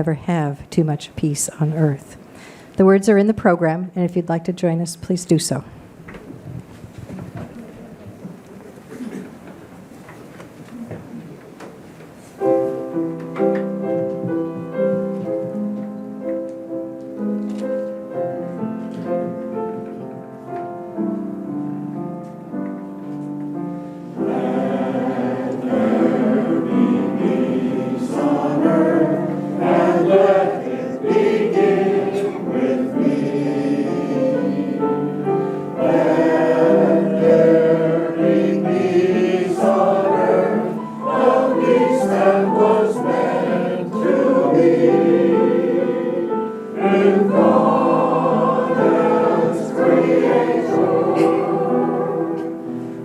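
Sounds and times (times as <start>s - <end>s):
piano chords: 12.4s - 53.0s
choir singing: 24.1s - 53.0s.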